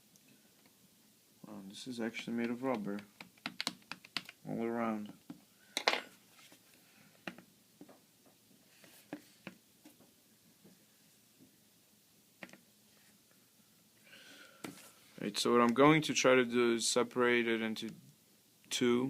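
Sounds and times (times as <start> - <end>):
faint clicks and taps from handling: 2.4 - 4.4.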